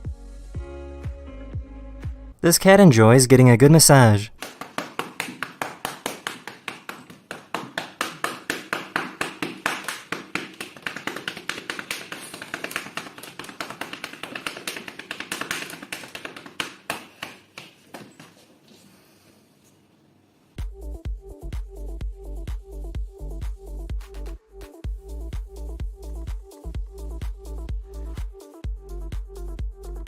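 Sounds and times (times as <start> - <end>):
rapid even tapping: 4.4 - 18.2.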